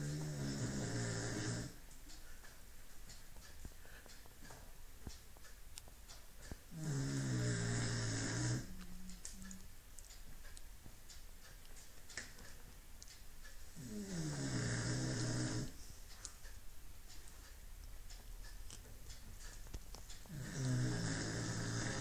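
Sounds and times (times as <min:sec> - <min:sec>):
dog snoring: 0:00.0 - 0:01.8, 0:06.7 - 0:08.8, 0:13.8 - 0:15.8, 0:20.3 - 0:22.0.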